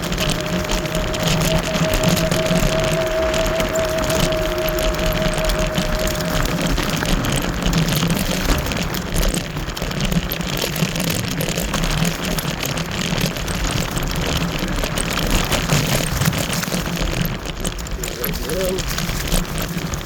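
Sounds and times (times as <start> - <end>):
tyre rumble: 0.0 - 20.0
wind buffeting microphone: 0.0 - 20.0.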